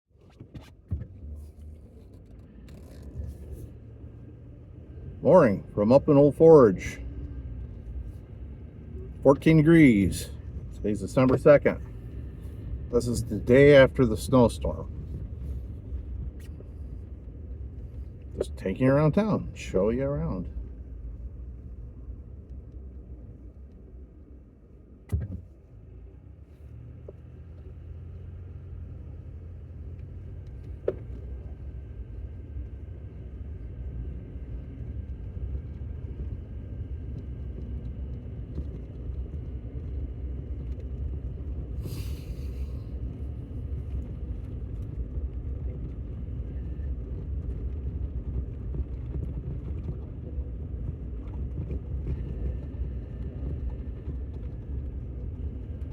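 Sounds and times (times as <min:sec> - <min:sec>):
car engine and road rumble: 0:00.0 - 0:55.9
thump: 0:25.1 - 0:25.5.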